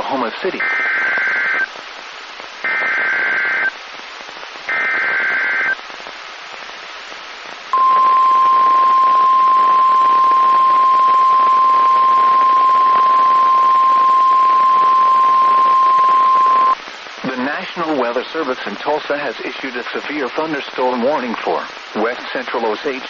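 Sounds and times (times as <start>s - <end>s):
radio receiver hiss: 0.0s - 23.0s
screeching data bursts: 7.8s - 16.8s
steady warning alarm tone: 7.8s - 16.8s.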